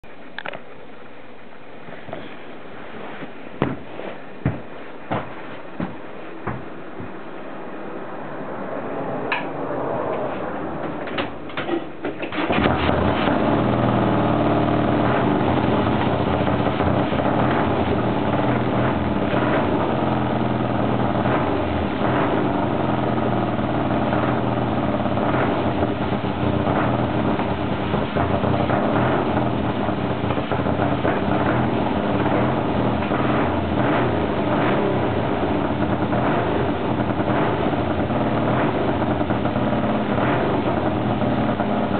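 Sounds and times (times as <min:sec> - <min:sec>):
motorcycle kick-start strokes: 0:11.5 - 0:41.9
motorcycle engine running: 0:12.4 - 0:41.9.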